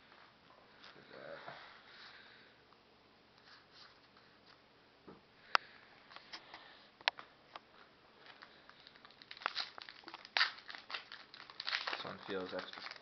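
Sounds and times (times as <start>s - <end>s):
cards rustling: 8.2s - 13.0s.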